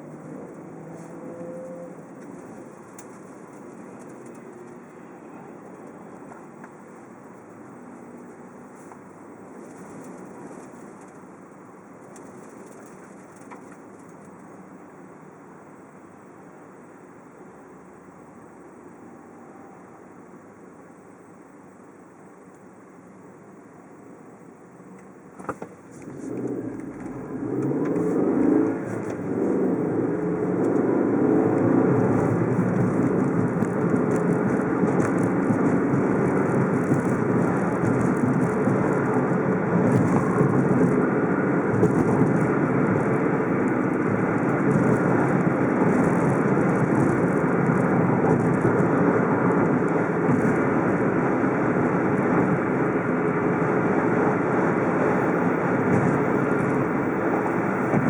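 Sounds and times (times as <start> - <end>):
car engine and road noise: 0.0 - 58.0.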